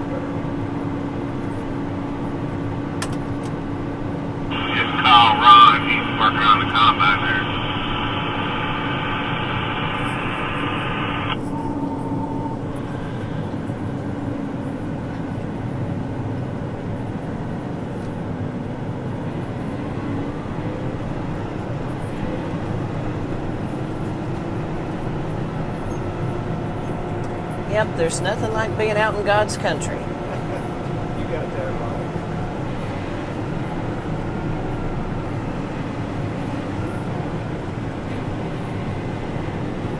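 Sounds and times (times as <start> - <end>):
farm vehicle engine droning: 3.6 - 15.7
hissing radio-like sound: 4.5 - 11.5.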